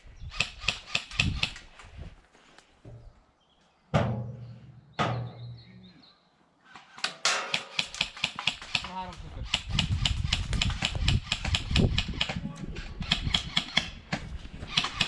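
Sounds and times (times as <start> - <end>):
footsteps through undergrowth: 1.6 - 3.2
airsoft gun shots: 7.0 - 9.0.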